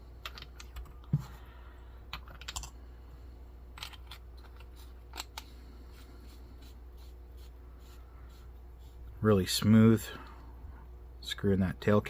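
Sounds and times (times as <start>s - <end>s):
flashlight parts clicking and scraping: 3.7s - 5.6s.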